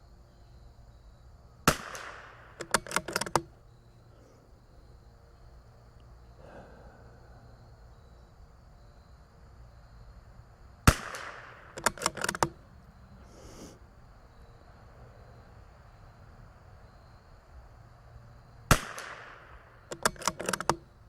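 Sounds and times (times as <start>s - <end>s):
rifle shot: 1.6s - 3.4s, 10.8s - 12.6s, 18.7s - 20.8s
rifle bolt metallic clicks: 1.7s - 3.5s, 10.9s - 12.6s, 19.9s - 20.8s.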